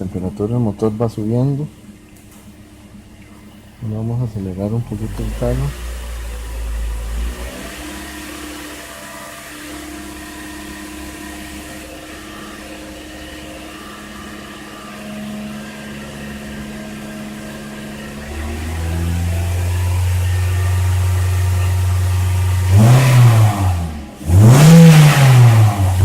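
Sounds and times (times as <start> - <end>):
car engine running above idle: 1.6 - 24.3.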